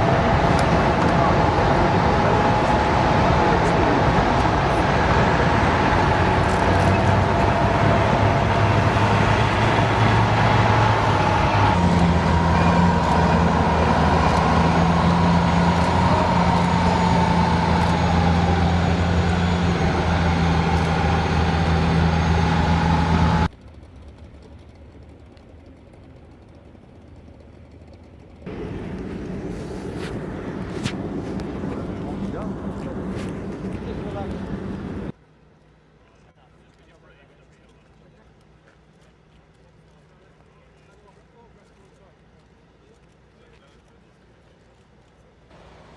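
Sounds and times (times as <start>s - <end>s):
heavy vehicle engine whining: 0.0s - 35.2s.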